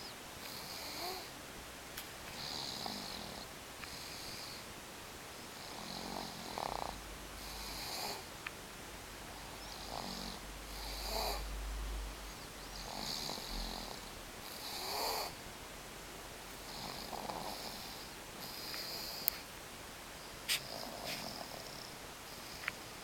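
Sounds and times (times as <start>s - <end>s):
person snoring: 12.8s - 15.4s.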